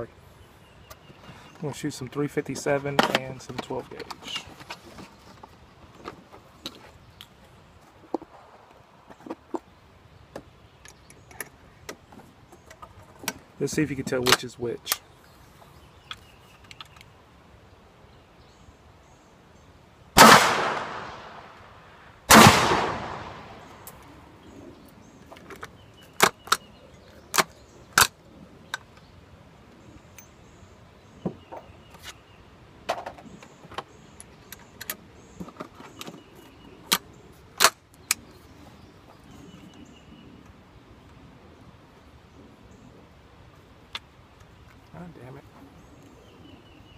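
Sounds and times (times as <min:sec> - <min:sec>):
shotgun shots with echo: 0:20.2 - 0:21.6, 0:22.3 - 0:23.8.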